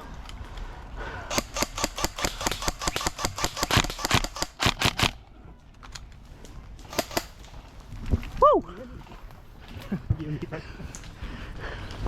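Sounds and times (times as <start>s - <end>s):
airsoft guns firing: 1.3s - 5.2s, 6.9s - 7.6s.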